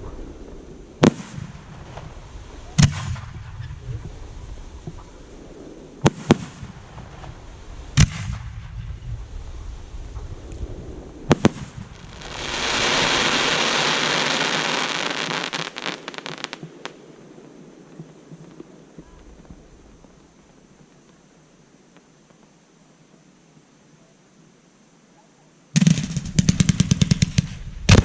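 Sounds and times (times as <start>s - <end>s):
firework bangs: 0.0s - 20.6s, 25.8s - 28.0s
firework hissing and crackling: 0.0s - 21.2s.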